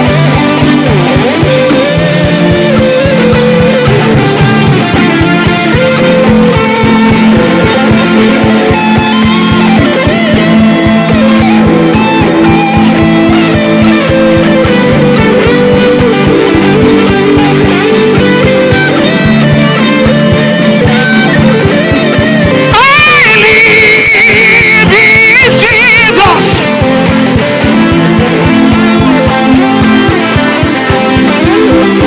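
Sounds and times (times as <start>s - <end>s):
worship band with guitar: 0.0s - 32.0s.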